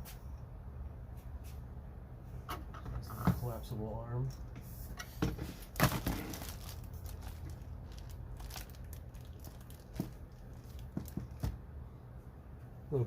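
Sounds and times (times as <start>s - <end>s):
low steady hum: 0.0s - 13.0s
packaging rustling: 5.6s - 11.6s.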